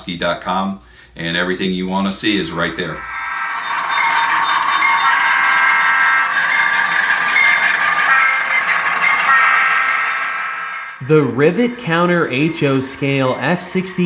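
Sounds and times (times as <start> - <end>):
locomotive sound from small speaker: 2.8 - 14.0
model train running: 3.6 - 10.3, 11.2 - 14.0.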